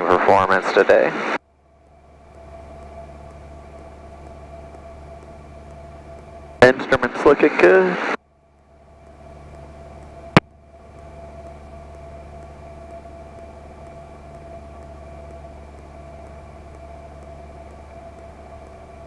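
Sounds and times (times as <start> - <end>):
small plane engine drone: 0.0 - 19.0.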